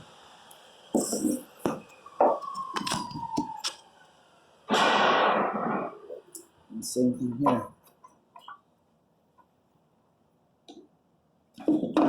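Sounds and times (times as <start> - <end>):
faint falling whine: 0.0 - 7.7
loud rush of noise: 4.7 - 6.3.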